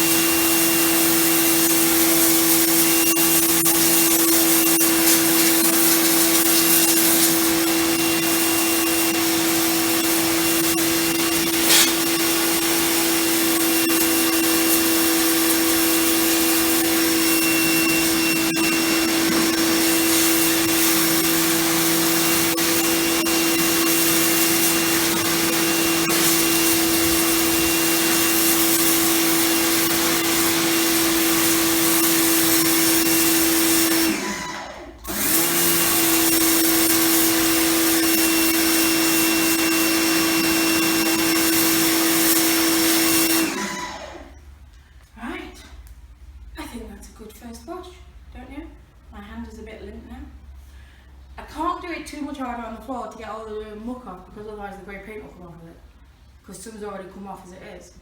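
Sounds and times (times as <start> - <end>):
water jet hissing on floor: 0.0 - 44.0
pressure washer motor hum: 0.0 - 44.4.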